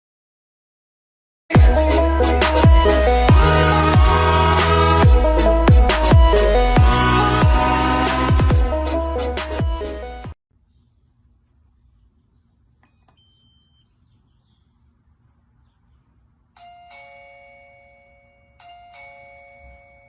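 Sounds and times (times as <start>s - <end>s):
music: 1.5s - 10.4s
doorbell ding-dong chime: 16.6s - 20.0s.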